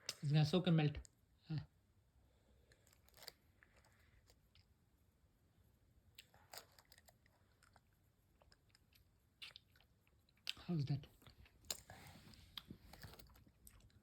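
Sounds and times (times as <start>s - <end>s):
hard candy crunching: 2.7s - 4.7s.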